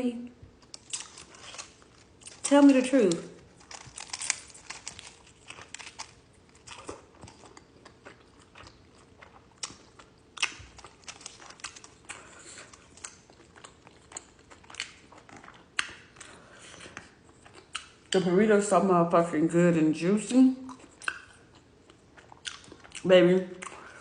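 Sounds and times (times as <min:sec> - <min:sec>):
biting into a burrito: 0:00.6 - 0:02.5, 0:03.2 - 0:18.1.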